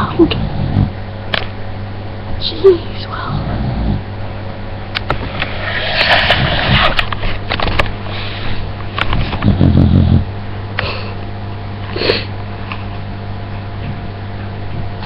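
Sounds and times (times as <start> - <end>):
loud snoring: 0.2 - 1.0, 3.3 - 4.0, 9.4 - 10.3.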